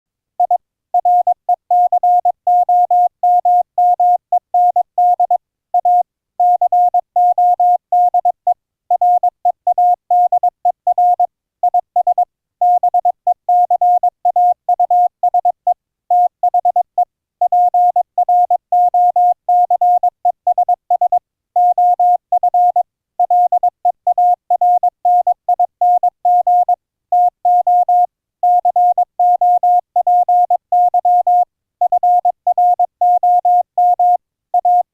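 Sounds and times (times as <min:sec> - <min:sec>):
morse code beeps: 0:00.4 - 0:34.9.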